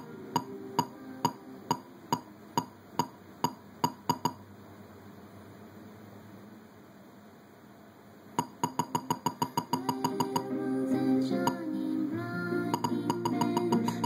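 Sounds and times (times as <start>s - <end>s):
sharp clicking beat: 0.3s - 4.4s, 8.4s - 10.5s, 12.7s - 14.0s.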